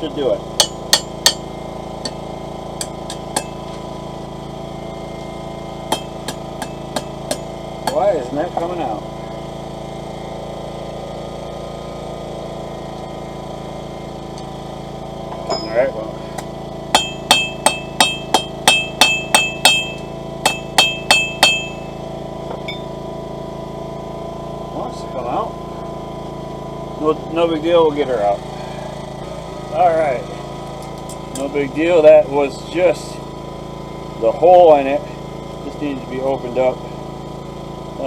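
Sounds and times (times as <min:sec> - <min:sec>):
steady hum: 0:00.0 - 0:37.0
hammer striking metal punch: 0:00.6 - 0:02.2, 0:02.8 - 0:03.8, 0:05.9 - 0:08.7, 0:15.3 - 0:15.8, 0:16.4 - 0:23.0.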